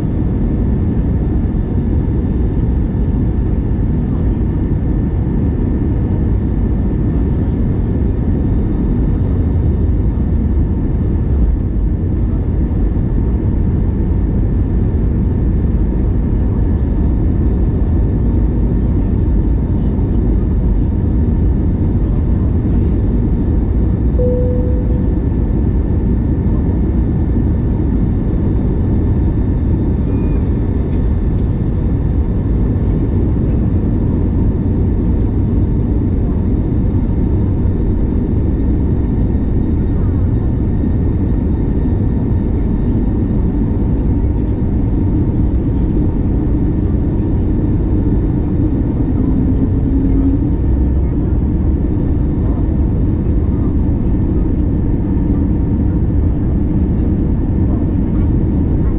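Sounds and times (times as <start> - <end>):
airliner cabin engine rumble: 0.0 - 58.9
faint steady whines: 0.0 - 58.9
short single tone: 24.2 - 25.4.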